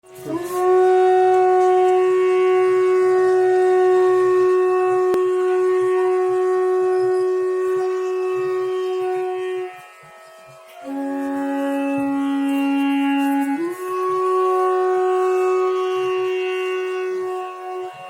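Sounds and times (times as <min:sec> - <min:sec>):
bamboo flute long note: 0:00.0 - 0:18.0.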